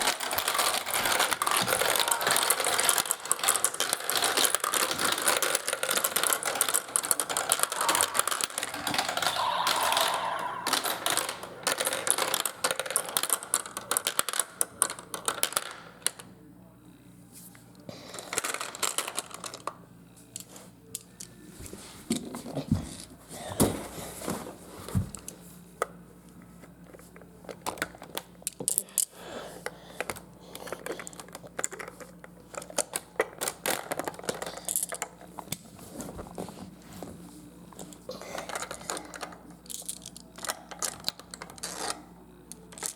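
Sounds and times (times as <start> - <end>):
marbles clattering down a track: 0.0 - 16.2, 18.1 - 19.7.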